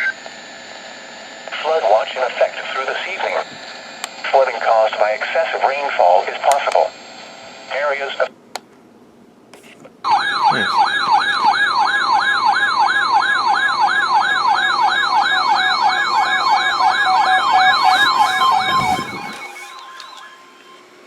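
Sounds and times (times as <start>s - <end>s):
radio alert tone yelping: 10.1s - 12.1s, 13.4s - 21.0s.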